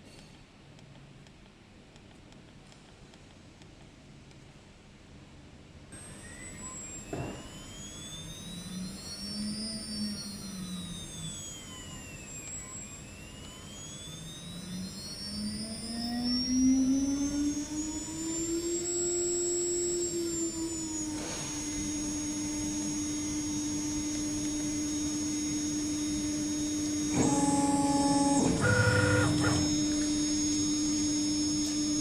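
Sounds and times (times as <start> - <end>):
router spindle whining: 6.0 - 32.0
high-pitched whistles sweeping: 6.2 - 23.6.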